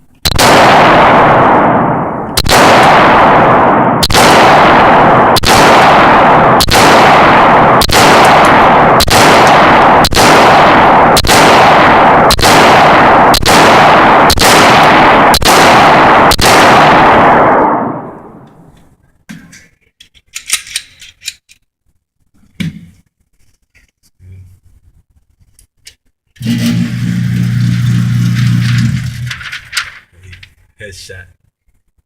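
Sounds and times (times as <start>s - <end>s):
pistol shots with echo: 0.3s - 18.4s.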